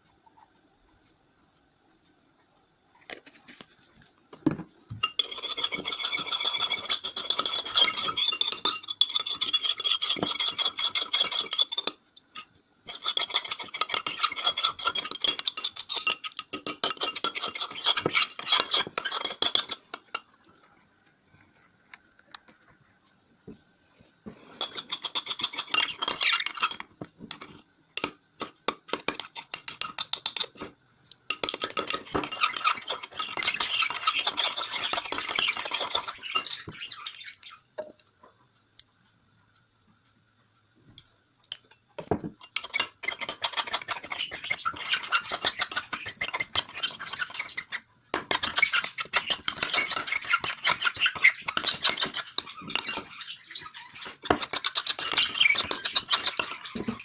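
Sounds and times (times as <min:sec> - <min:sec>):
utensil scraping round a bowl: 0:04.9 - 0:20.4, 0:24.2 - 0:37.3, 0:42.3 - 0:57.0.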